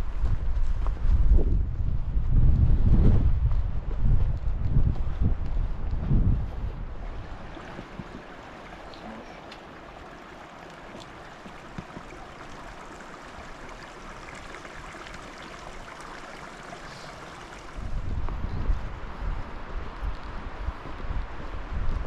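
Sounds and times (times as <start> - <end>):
wind buffeting microphone: 0.0 - 9.0, 9.8 - 22.0
stream water running: 6.9 - 18.4.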